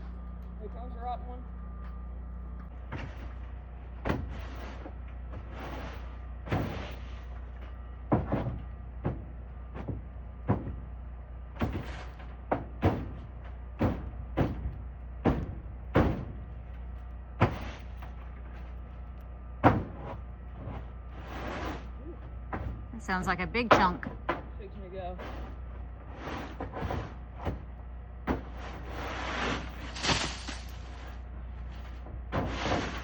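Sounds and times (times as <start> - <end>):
steady low hum: 0.0 - 33.0
brush scraping ice off roof: 21.1 - 22.0, 25.1 - 27.2, 28.4 - 33.0.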